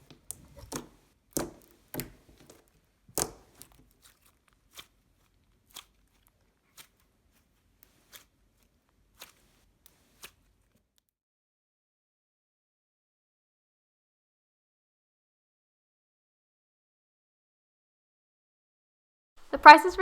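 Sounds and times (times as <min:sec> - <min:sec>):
slime crunchy clicks and pops: 0:00.0 - 0:05.0, 0:05.6 - 0:07.0
soft crackling: 0:01.8 - 0:11.0.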